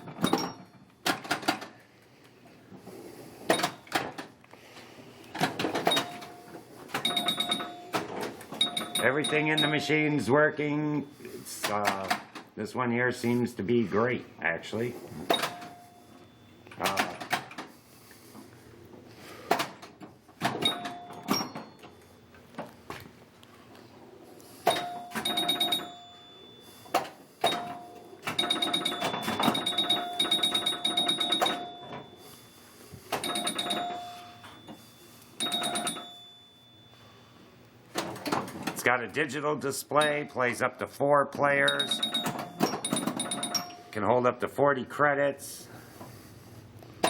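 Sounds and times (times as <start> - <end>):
pinball clicks and knocks: 0.0 - 1.7, 3.5 - 4.3, 5.4 - 9.8, 15.3 - 15.9, 16.7 - 17.7, 19.5 - 22.0, 24.6 - 26.2, 26.8 - 32.2, 33.1 - 34.8, 35.4 - 36.3, 41.7 - 43.8
bell-like scoring rings: 7.0 - 8.0, 8.6 - 10.2, 15.3 - 16.6, 20.6 - 22.0, 24.6 - 37.5, 40.0 - 40.4, 41.6 - 44.0.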